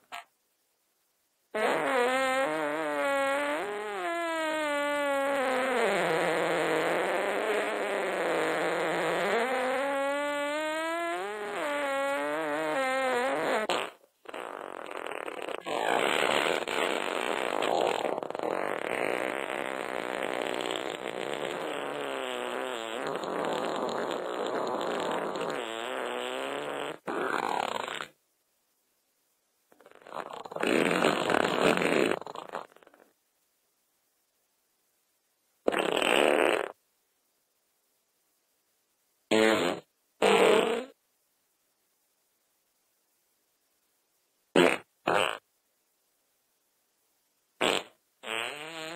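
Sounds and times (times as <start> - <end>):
fart sound effects: 0.0 - 0.3, 1.5 - 28.2, 29.7 - 33.1, 35.7 - 36.8, 39.3 - 41.0, 44.6 - 45.4, 47.6 - 48.9.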